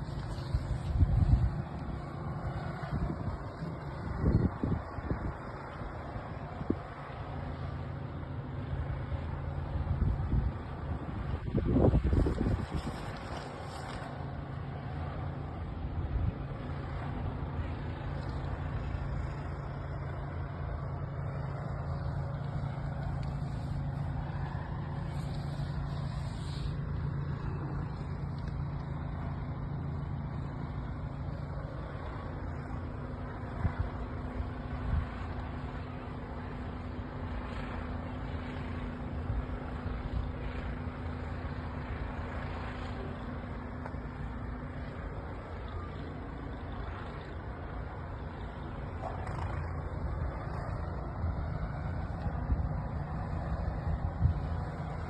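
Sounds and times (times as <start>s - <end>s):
low humming rumble: 0.0s - 55.0s.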